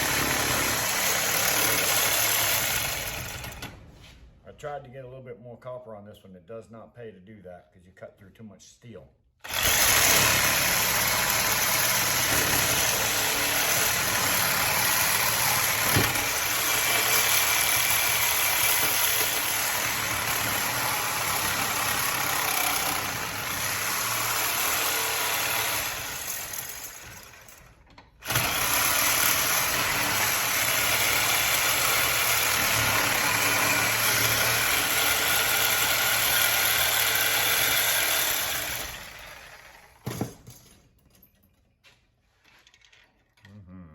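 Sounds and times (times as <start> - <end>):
angle grinder cutting steel: 9.5 - 27.4.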